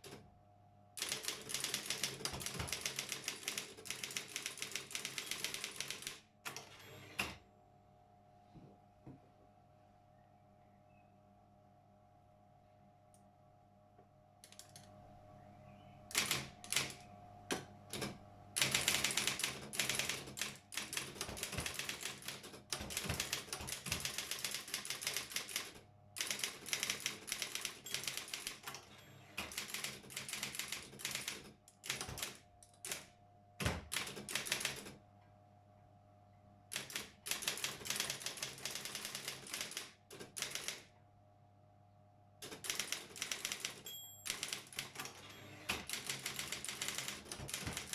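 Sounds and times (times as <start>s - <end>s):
electric typewriter key strikes: 1.0s - 6.6s, 17.9s - 33.0s, 33.6s - 34.8s, 36.8s - 40.8s, 42.4s - 47.9s
typewriter motor hum: 1.0s - 7.4s, 16.1s - 35.0s, 36.7s - 40.9s, 42.4s - 47.9s.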